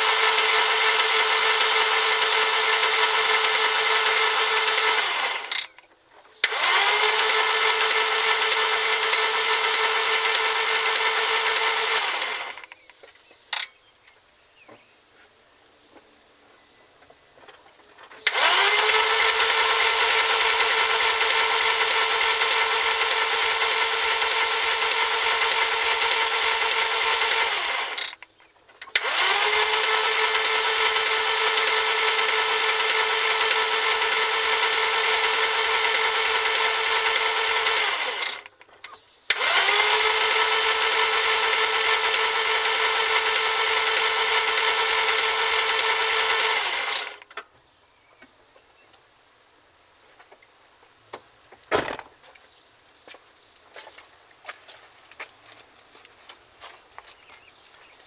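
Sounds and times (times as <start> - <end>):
starter motor cranking: 0.0 - 12.9, 18.2 - 47.4.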